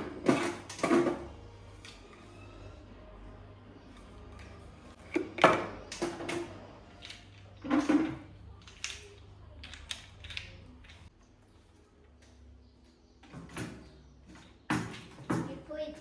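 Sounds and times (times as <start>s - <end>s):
plastic parts clicking and knocking: 4.3s - 11.2s.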